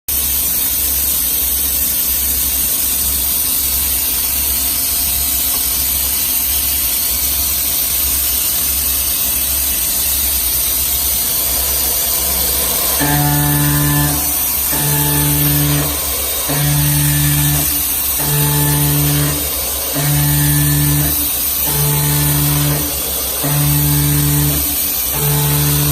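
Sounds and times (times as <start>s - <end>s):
milling machine cutting steel: 8.3s - 25.9s.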